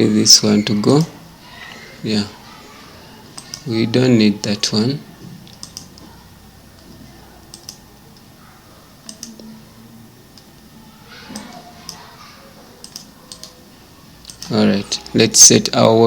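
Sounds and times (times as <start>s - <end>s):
faint steady background hum: 0.0s - 16.0s
computer keyboard key clicks: 3.4s - 3.7s, 5.5s - 6.0s, 7.5s - 7.8s, 9.0s - 9.5s, 12.8s - 13.6s, 14.2s - 14.6s.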